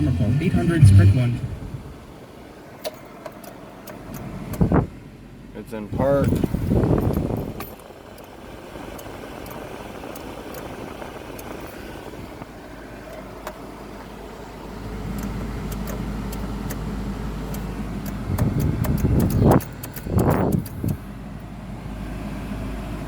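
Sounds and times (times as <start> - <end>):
low hum: 0.0 - 2.1
quickening starter clicks: 17.5 - 21.0.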